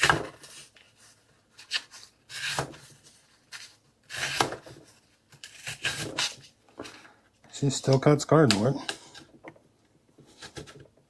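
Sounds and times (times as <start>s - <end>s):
knife slicing cardboard: 1.6s - 6.5s.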